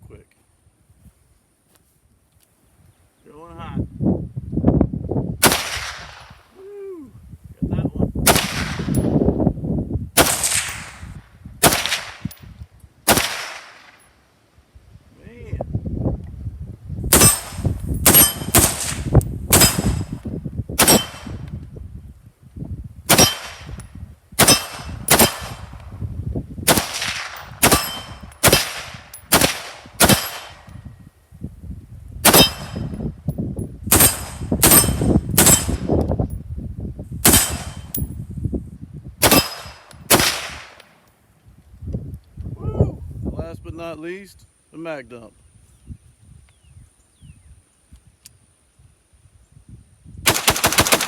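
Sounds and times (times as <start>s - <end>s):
rifle shots: 5.4s - 6.4s, 8.2s - 9.1s, 10.2s - 12.4s, 13.1s - 14.0s, 17.1s - 20.2s, 20.8s - 21.5s, 23.1s - 23.8s, 24.4s - 25.7s, 26.6s - 30.7s, 32.2s - 32.9s, 33.9s - 35.9s, 37.2s - 38.0s, 39.2s - 40.9s, 50.3s - 51.0s.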